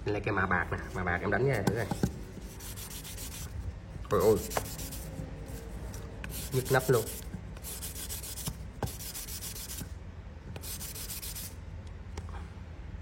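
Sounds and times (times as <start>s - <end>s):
rapid rubbing strokes on metal: 2.4s - 3.6s, 4.2s - 5.6s, 6.3s - 9.8s, 10.6s - 11.6s.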